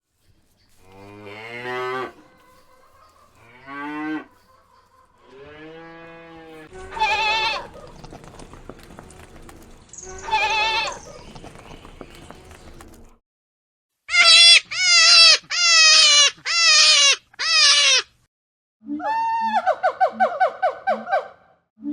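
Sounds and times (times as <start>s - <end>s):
cattle mooing: 0.8s - 4.5s, 5.2s - 13.0s
high wavering animal calls: 6.5s - 12.5s.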